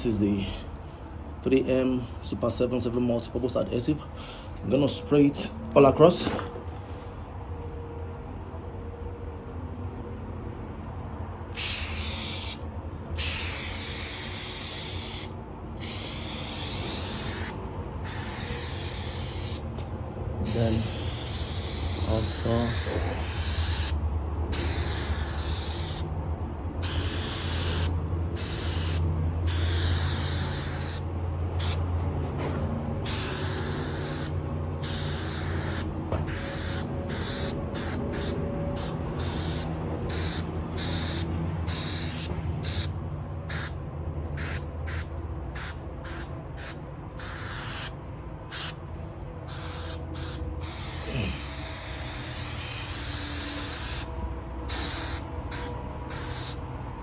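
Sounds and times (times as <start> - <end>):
aerosol spray hissing: 11.6 - 12.6, 13.2 - 19.6, 20.4 - 26.1, 26.8 - 31.0, 31.6 - 31.8, 33.0 - 42.9, 44.4 - 48.8, 49.5 - 54.1, 54.7 - 56.6.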